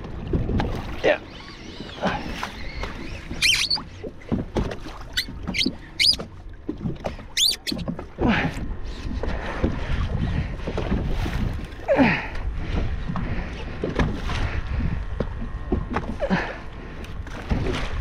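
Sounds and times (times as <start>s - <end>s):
water noise: 0.0s - 18.0s
wind: 0.0s - 18.0s
short high-pitched squeaks: 2.6s - 3.9s, 5.1s - 6.2s, 7.4s - 7.8s
low rumble: 8.0s - 18.0s.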